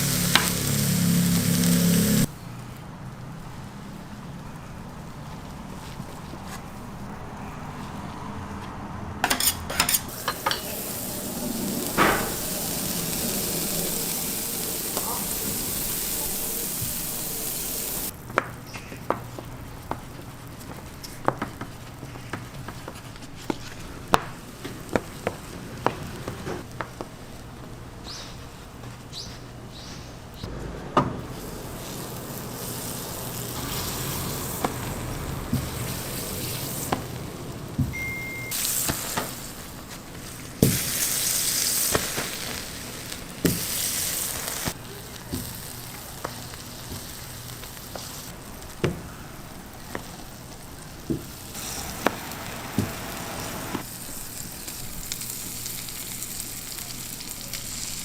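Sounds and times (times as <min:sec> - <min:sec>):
food sizzling as it fries: 0:00.0 - 0:02.3, 0:10.1 - 0:18.2, 0:31.2 - 0:58.0
short high beep: 0:37.9 - 0:38.6.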